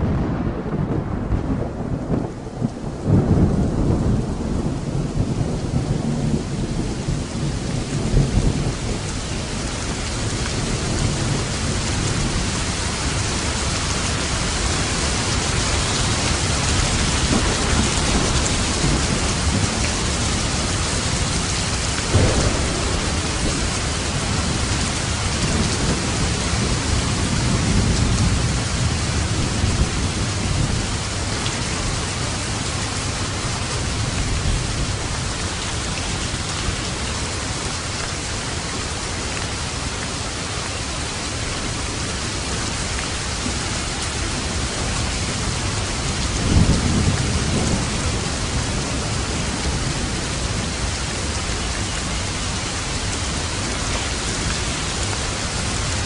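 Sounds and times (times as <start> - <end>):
sharp thunder clap: 0.0 - 5.6, 22.0 - 28.5
rolling thunder rumbling: 0.0 - 37.6, 39.8 - 56.0
heavy rain hissing: 0.0 - 56.0.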